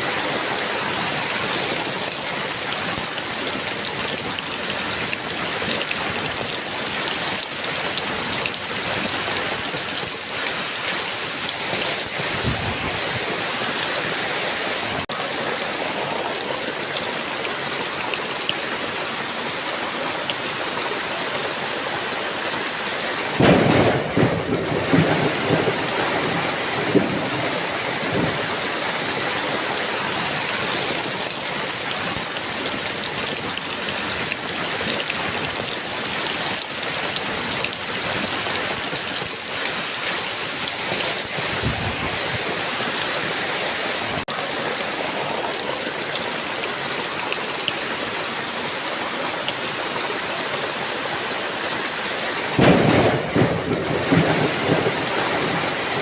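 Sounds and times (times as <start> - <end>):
heavy rain falling: 0.0 - 56.0
thunder rumbling: 23.4 - 28.8, 52.6 - 56.0.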